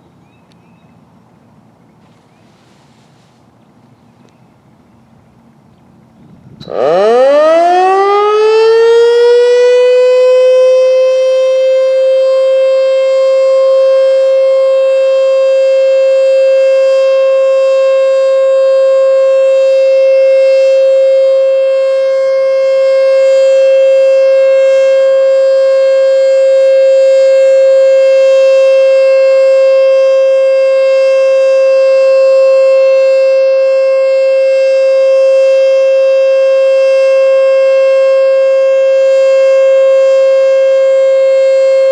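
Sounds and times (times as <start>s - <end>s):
warning siren winding up: 6.6s - 41.9s.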